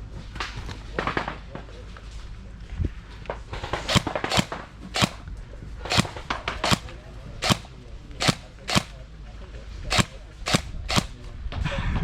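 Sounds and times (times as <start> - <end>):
airsoft gun shots: 3.9 - 5.2, 5.9 - 9.0, 9.9 - 11.2.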